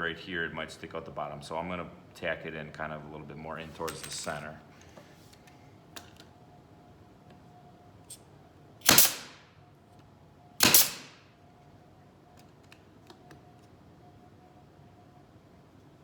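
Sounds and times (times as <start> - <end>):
nail gun firing with air hiss: 8.8 - 9.5, 10.6 - 11.3.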